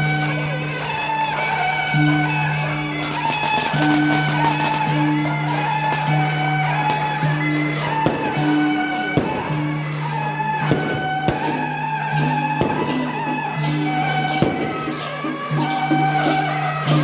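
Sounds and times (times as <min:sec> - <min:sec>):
short percussion strikes: 0:06.9 - 0:17.0.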